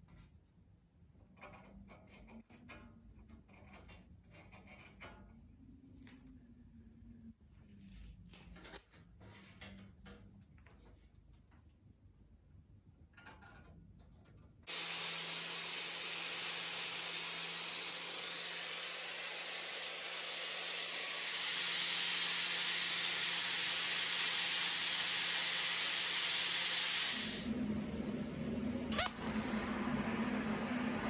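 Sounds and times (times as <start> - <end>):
shop tool hissing: 14.7 - 27.5
low hum: 27.2 - 31.0.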